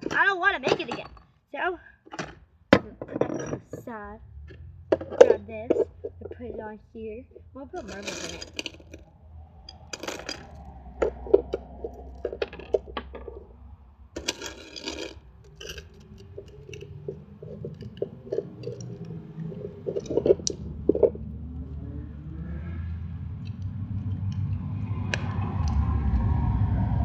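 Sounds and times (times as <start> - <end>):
marbles clinking into container: 7.8 - 9.0, 9.7 - 13.4, 14.2 - 19.1.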